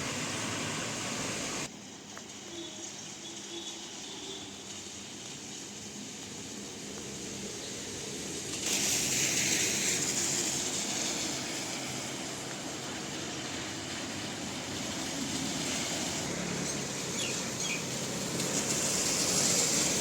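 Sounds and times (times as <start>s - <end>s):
rain hiss: 0.0s - 20.0s
wet traffic: 0.0s - 20.0s
loud hiss: 3.2s - 16.3s.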